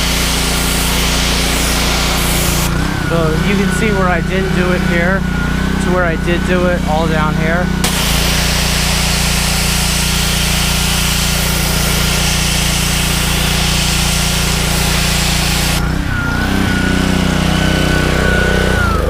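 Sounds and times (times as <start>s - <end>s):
water spray hissing: 0.0s - 5.1s, 7.8s - 16.0s
pressure washer engine running: 0.0s - 19.0s
thin engine whine: 0.0s - 19.0s.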